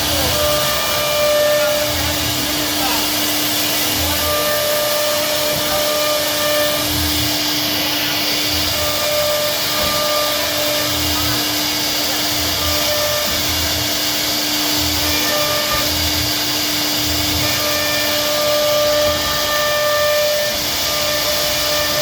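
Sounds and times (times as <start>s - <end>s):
higher machine tone: 0.0s - 16.3s
router machine whirring: 0.0s - 22.0s.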